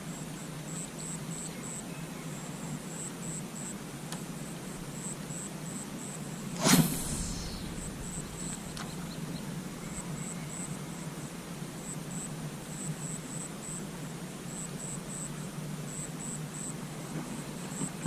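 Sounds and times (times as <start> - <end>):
low rumble: 6.6 - 11.1
insects chirping: 6.6 - 13.8.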